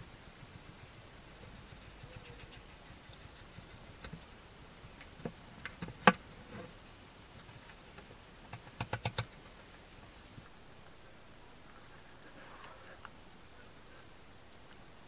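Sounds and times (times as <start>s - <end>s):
hedgehog clicking: 7.4s - 9.9s.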